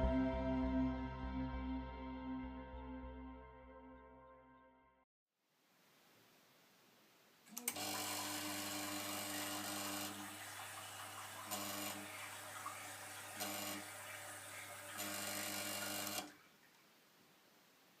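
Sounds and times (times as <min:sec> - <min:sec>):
espresso machine pump humming: 0:07.7 - 0:16.3.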